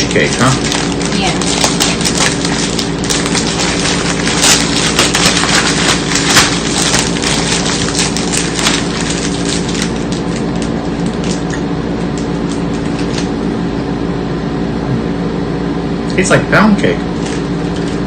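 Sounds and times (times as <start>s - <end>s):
plastic wrapper crinkling: 0.0s - 13.4s, 17.1s - 18.0s
steady low hum: 0.0s - 18.0s.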